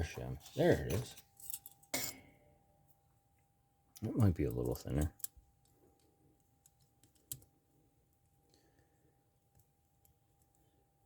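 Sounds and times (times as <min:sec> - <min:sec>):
faint small metal clicks: 0:04.0 - 0:07.5.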